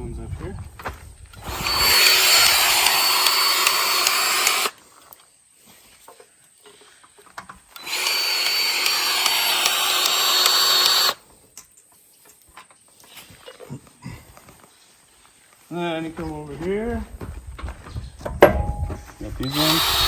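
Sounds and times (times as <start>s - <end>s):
powered grease gun motor whining: 1.4s - 4.8s, 7.7s - 11.2s, 19.4s - 20.0s.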